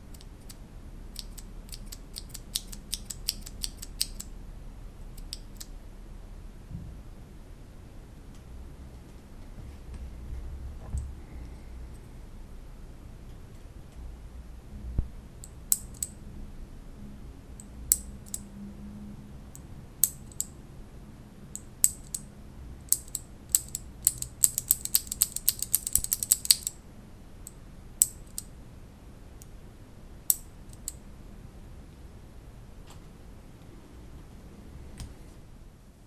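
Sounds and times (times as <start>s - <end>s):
mechanical keyboard keys clicking: 1.2s - 4.3s, 22.9s - 26.7s.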